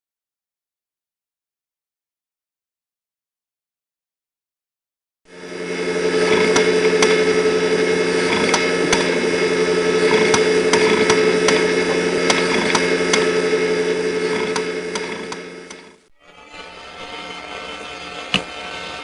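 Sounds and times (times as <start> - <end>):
hard disk drive humming: 5.3 - 19.0
hard disk heads clicking: 6.2 - 7.4, 8.1 - 13.4, 14.2 - 16.0.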